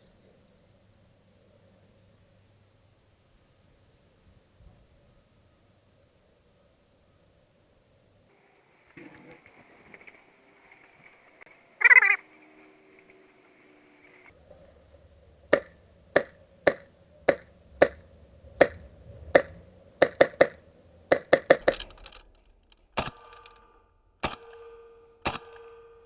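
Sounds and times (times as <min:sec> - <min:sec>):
airsoft gun shots: 0:15.5 - 0:18.0, 0:19.4 - 0:22.1, 0:24.2 - 0:26.0.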